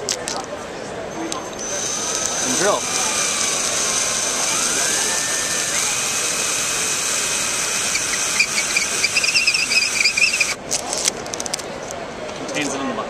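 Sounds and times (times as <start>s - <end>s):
drill bit chattering into wall: 1.6s - 10.6s
power drill whining: 1.6s - 10.6s.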